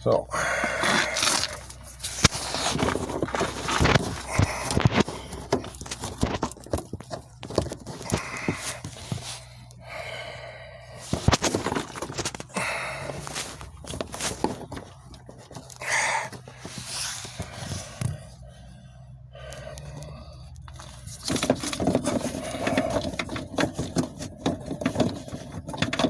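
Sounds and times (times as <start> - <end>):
person breathing: 0.2 - 5.6, 8.0 - 11.8, 12.5 - 13.7, 15.8 - 21.2
plastic knocks clicks and scrapes: 0.6 - 9.4, 11.0 - 12.5, 13.1 - 18.4, 19.9 - 26.0.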